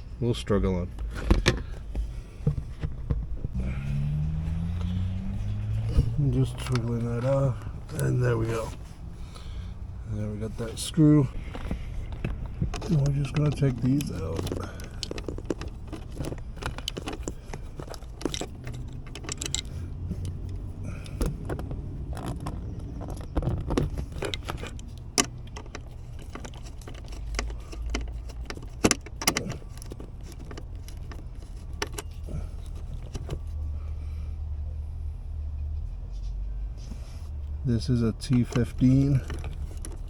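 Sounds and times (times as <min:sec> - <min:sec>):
loose screws clinking: 0:04.5 - 0:33.6, 0:38.2 - 0:40.0.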